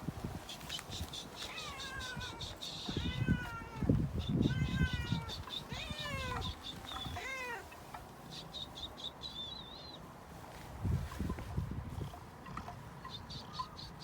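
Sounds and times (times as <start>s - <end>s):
cat meowing: 1.5s - 7.6s.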